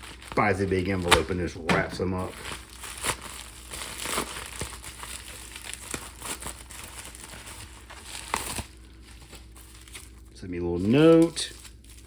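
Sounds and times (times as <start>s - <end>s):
packaging crinkling and rustling: 0.0s - 12.0s.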